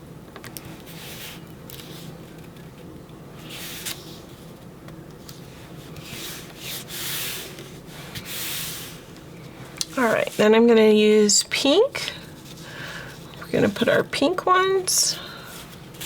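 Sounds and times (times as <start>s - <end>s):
paper strips rubbed on paper: 6.0s - 9.0s.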